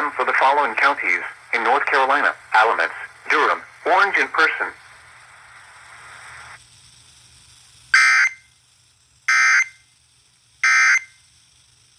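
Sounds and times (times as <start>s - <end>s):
digital data tone bursts: 8.0s - 8.5s, 9.3s - 9.9s, 10.6s - 11.2s.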